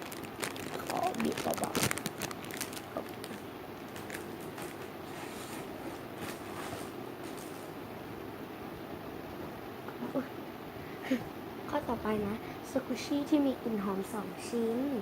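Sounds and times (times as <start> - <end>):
small crackles: 0.0 - 7.8
room hum: 0.0 - 15.0.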